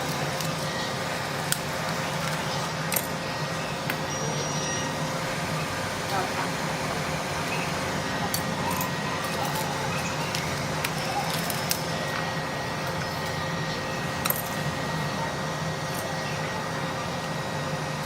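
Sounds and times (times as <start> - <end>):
steady background hum: 0.0 - 18.0
small tools clicking and clinking: 2.2 - 3.2, 8.3 - 13.4, 14.2 - 14.6.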